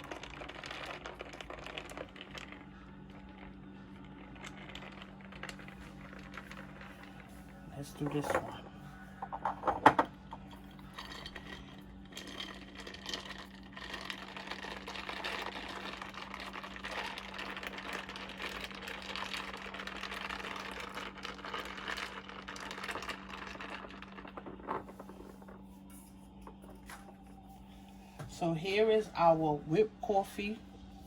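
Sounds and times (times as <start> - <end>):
ice cubes rattling in glass: 0.0 - 7.2, 10.6 - 25.5.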